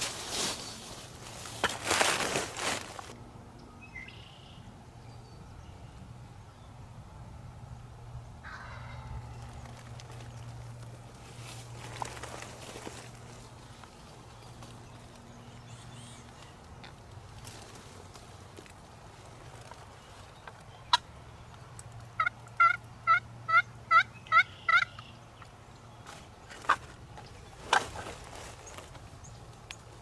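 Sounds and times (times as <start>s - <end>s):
wild turkey yelping: 8.4s - 9.2s, 22.2s - 25.1s.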